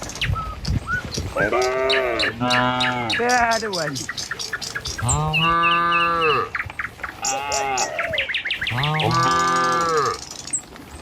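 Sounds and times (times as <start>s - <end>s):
cattle mooing: 1.4s - 3.2s, 5.0s - 6.5s, 7.2s - 10.3s.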